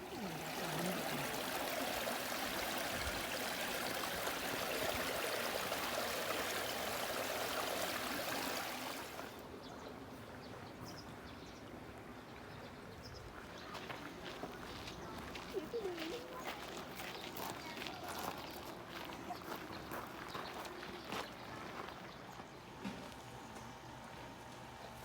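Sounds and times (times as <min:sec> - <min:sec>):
stream water rushing: 0:00.0 - 0:09.4.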